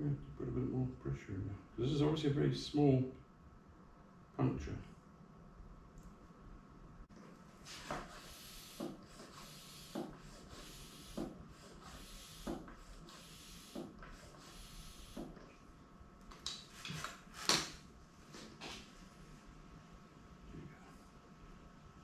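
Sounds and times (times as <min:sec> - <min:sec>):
hand pump strokes with air hiss: 0:07.7 - 0:15.4.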